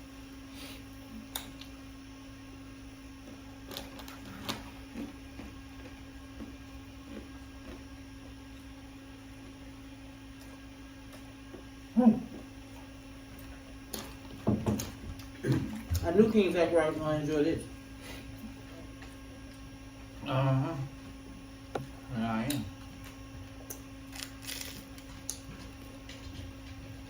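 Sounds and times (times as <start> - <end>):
electrical hum: 0.0 - 27.0
person eating: 3.7 - 8.3.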